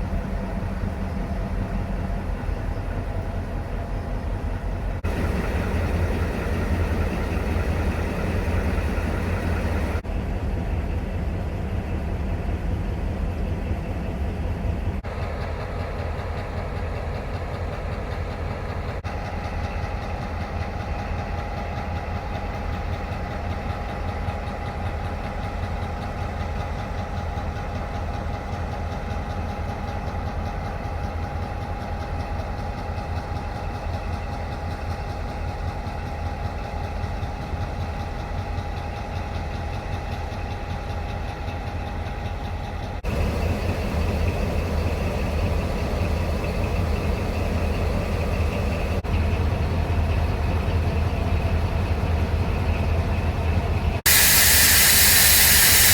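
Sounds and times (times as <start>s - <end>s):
diesel locomotive engines humming: 0.0s - 55.9s
engine whine: 4.9s - 10.8s, 43.0s - 49.7s.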